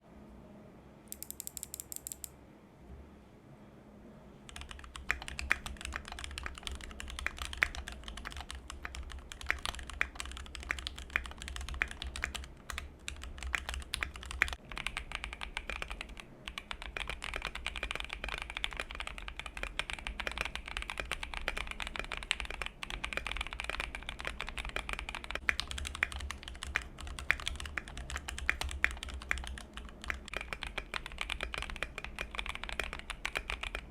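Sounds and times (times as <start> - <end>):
mechanical keyboard key clacks: 1.1 - 2.3.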